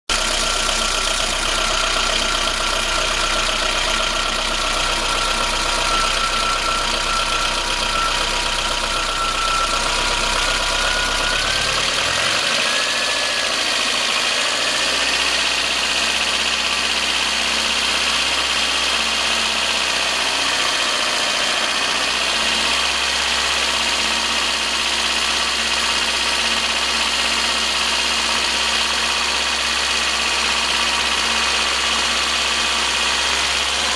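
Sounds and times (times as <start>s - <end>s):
car engine idling with knock: 0.1s - 18.6s.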